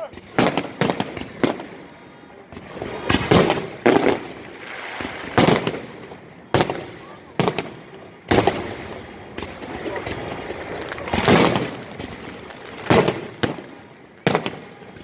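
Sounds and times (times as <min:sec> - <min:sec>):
fireworks bursting bangs: 0:00.0 - 0:15.0.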